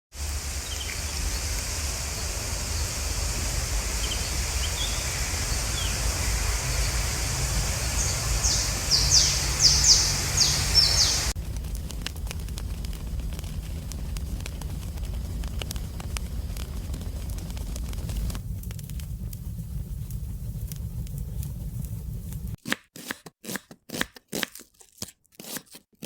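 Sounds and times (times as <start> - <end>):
wind: 0.1 - 22.6
birds chirping: 0.2 - 11.4
rushing river: 0.2 - 11.4
campfire crackling: 0.2 - 22.6.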